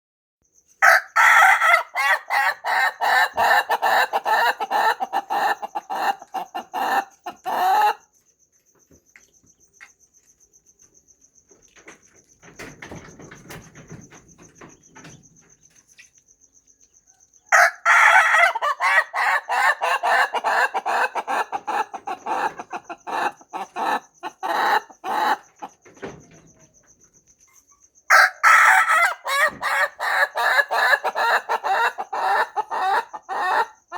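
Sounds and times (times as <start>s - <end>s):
rooster crowing: 0.8s - 8.0s, 17.4s - 25.7s, 28.1s - 33.9s.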